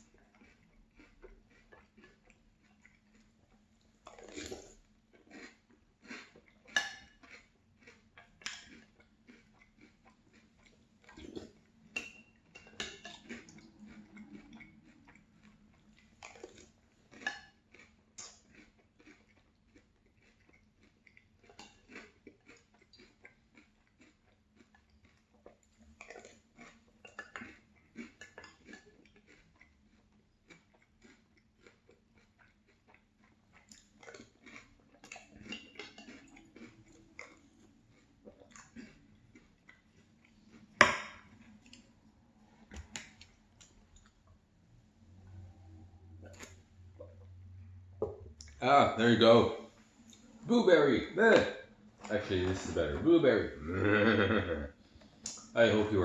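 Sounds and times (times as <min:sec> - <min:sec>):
chewing crunchy cereal: 0:00.0 - 0:47.8, 0:48.4 - 0:56.0
spoon clinking in a bowl: 0:12.0 - 0:13.2.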